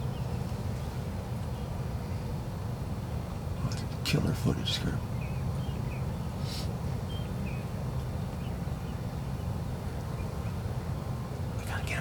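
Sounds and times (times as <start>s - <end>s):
brief hiss: 6.4s - 6.8s.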